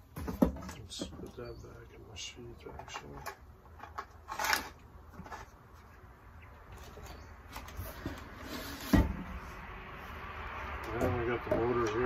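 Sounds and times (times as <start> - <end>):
small clicks and scrapes: 2.6 - 6.0.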